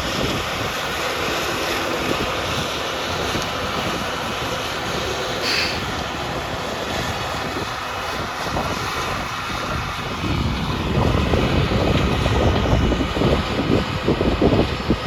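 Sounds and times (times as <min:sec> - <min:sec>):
farm machinery engine running: 0:00.0 - 0:15.0.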